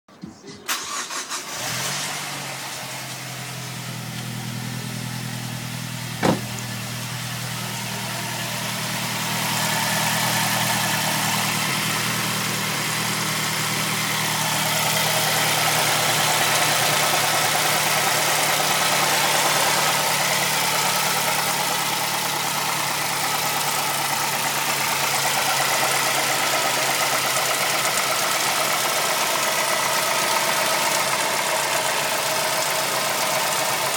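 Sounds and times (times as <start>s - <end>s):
car engine starting and idling: 0.4s - 33.9s
engine knocking: 9.0s - 33.9s.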